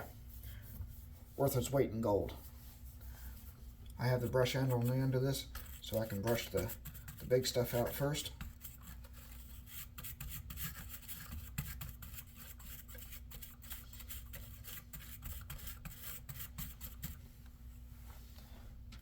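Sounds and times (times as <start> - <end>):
brush bristles scrubbing: 4.0 - 17.2.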